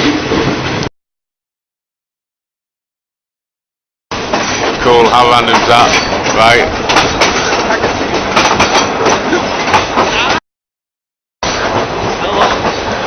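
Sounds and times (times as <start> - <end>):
train wheels rumbling on rails: 0.0 - 0.9, 4.1 - 10.4, 11.4 - 13.0.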